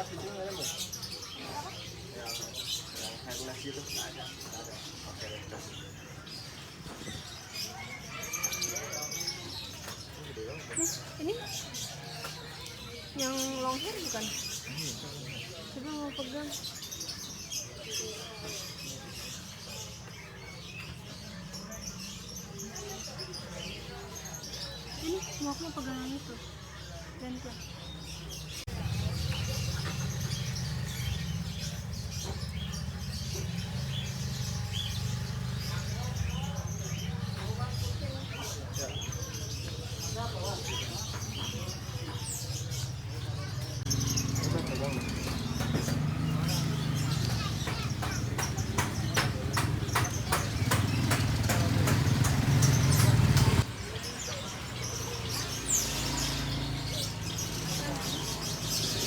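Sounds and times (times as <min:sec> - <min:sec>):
small animals chirping and squeaking: 0:00.0 - 0:59.0
engine running: 0:43.8 - 0:54.0.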